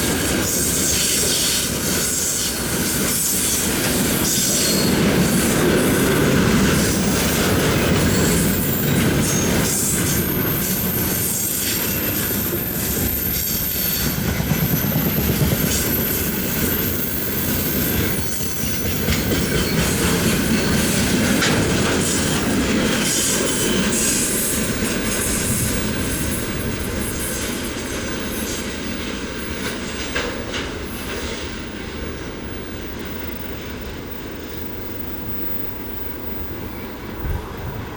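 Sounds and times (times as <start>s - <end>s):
train wheels clattering over rail joints: 0.0s - 31.7s
thin high wheel squeal: 3.2s - 5.0s.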